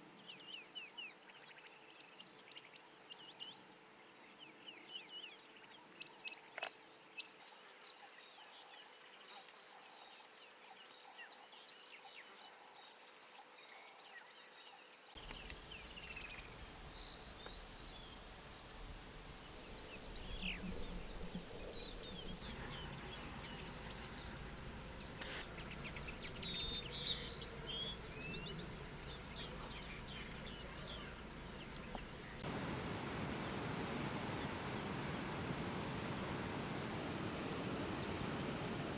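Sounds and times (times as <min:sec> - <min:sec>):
faint insect hum: 0:12.4 - 0:32.4
birds chirping and whistling: 0:15.2 - 0:32.4
low wind rumble: 0:15.2 - 0:38.9.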